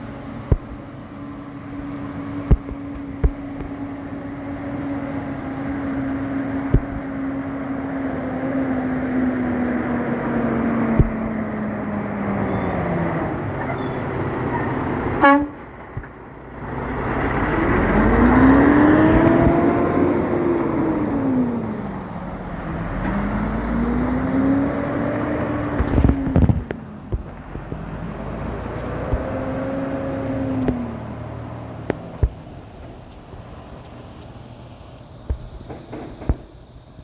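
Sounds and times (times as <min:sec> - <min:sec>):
truck air horn blast: 0:13.7 - 0:15.8.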